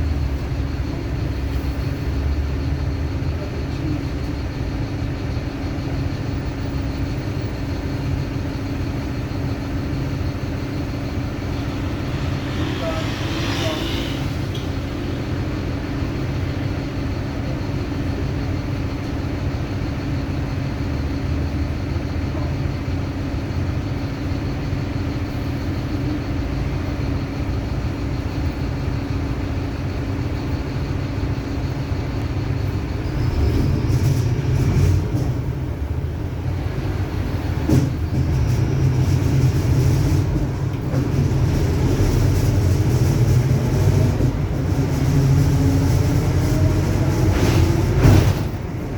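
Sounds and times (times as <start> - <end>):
bus diesel engine rumbling: 0.0 - 48.9
differential droning: 8.4 - 16.6.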